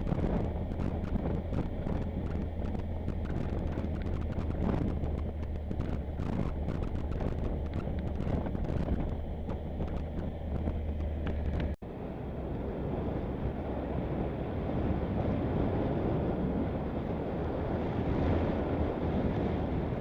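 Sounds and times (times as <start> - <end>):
motorcycle engine running: 0.0 - 11.8
wind noise: 0.0 - 20.0.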